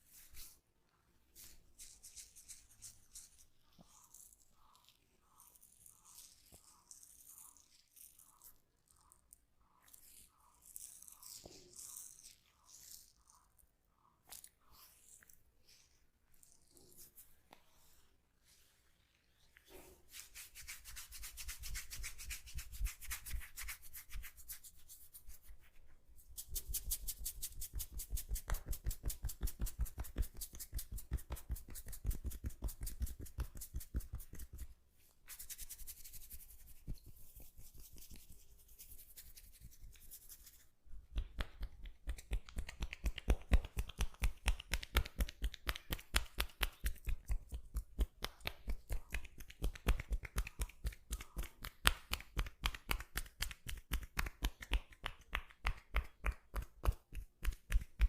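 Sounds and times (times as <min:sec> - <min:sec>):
hands rubbing rapidly: 0:20.1 - 0:58.0.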